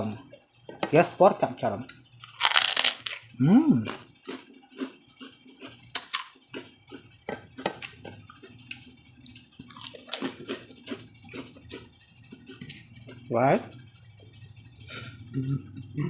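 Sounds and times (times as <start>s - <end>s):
crunching crispy fried food: 1.8s - 13.3s.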